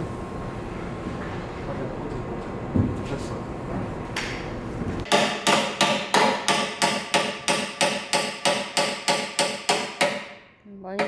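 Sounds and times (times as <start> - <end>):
hammer striking steel: 5.1 - 11.0.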